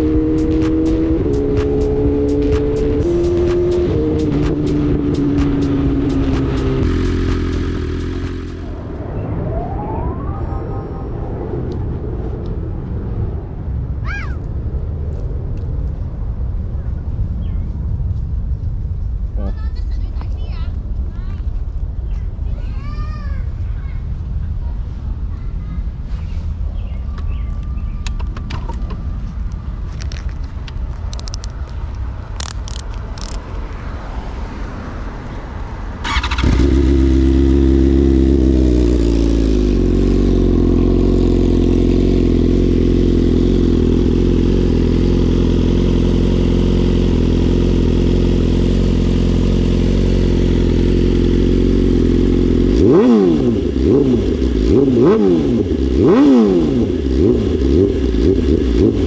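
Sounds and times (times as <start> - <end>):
motorcycle engine idling and revving: 0.0 - 9.8, 26.7 - 59.0.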